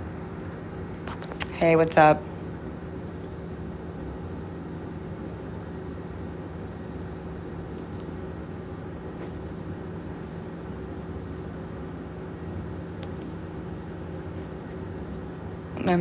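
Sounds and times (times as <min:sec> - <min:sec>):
low constant hum: 0:00.0 - 0:16.0.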